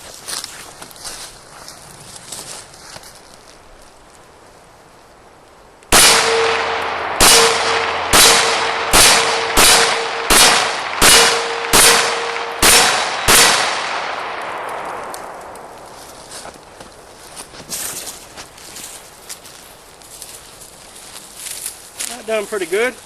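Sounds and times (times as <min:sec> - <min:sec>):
pistol shots: 0:05.9 - 0:15.5
steel gong target ringing: 0:06.0 - 0:12.9.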